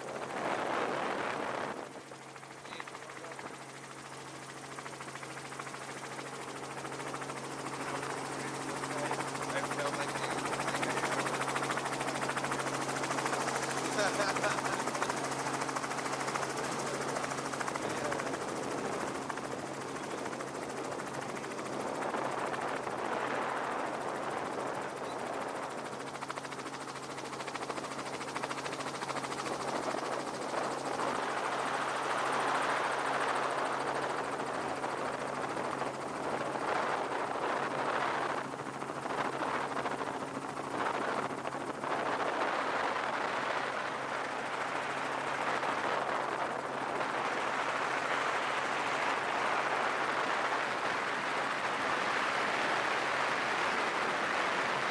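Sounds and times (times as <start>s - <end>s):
helicopter running: 0.0s - 54.9s.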